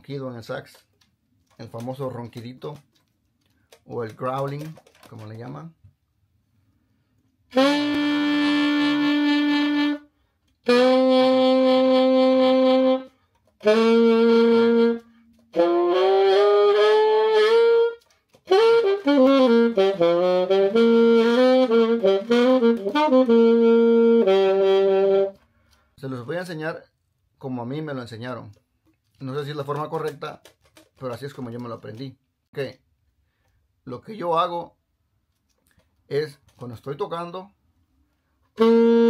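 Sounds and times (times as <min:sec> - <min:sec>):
saxophone playing: 0:07.5 - 0:25.5, 0:38.5 - 0:39.0.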